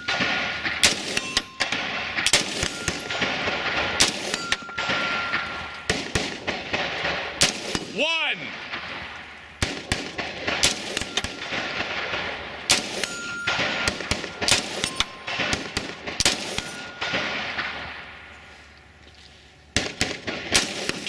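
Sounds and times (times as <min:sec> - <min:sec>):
steel targets ringing: 0:00.0 - 0:08.8, 0:10.6 - 0:18.5
rifle shots: 0:00.0 - 0:18.3, 0:19.8 - 0:21.0.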